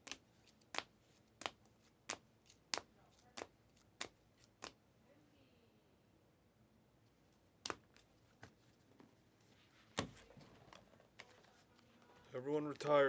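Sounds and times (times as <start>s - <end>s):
cards tapped on a table: 10.0s - 11.4s.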